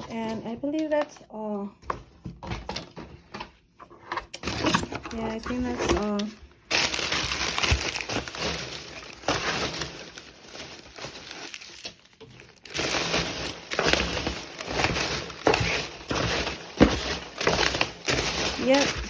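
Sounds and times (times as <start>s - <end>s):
packaging crinkling: 4.4s - 19.0s.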